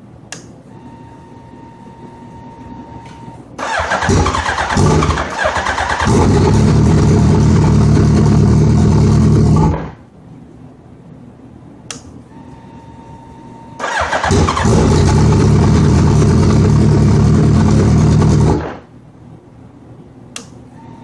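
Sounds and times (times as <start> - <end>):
motorcycle engine cranking: 3.6 - 9.7, 13.8 - 18.5.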